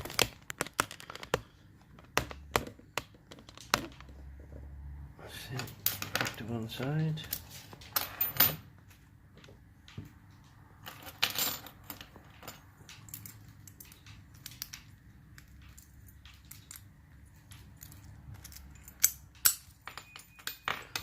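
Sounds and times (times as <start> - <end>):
metallic clicks of lock-picking tools: 12.7 - 21.0.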